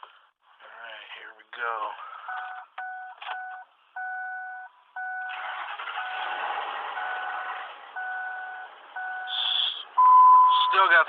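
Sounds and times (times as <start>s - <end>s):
car engine starting and running: 2.0s - 11.0s
dashboard warning chime beeping: 2.2s - 6.3s, 7.0s - 11.0s.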